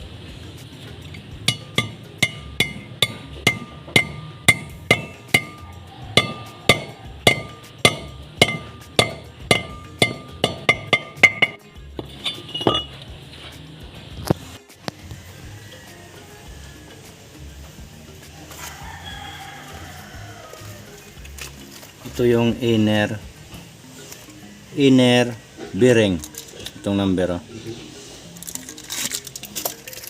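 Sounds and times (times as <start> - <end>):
hammer blows on metal: 1.5 - 12.9.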